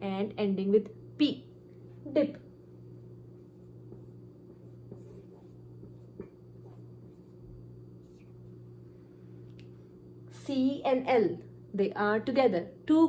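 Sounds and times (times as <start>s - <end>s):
steady low hum: 0.0s - 13.0s
pen scratching while writing: 3.6s - 7.4s.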